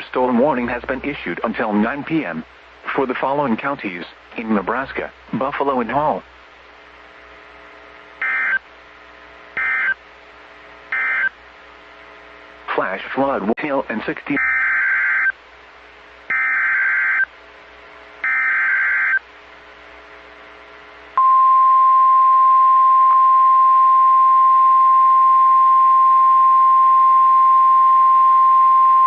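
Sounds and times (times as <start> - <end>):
steady alarm tone: 8.2 - 8.6, 9.6 - 10.0, 10.9 - 11.3, 14.4 - 15.3, 16.3 - 17.3, 18.2 - 19.2.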